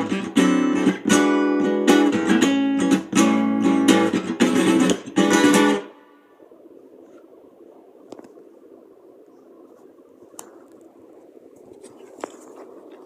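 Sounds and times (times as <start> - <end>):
acoustic guitar strumming chords: 0.0 - 6.1.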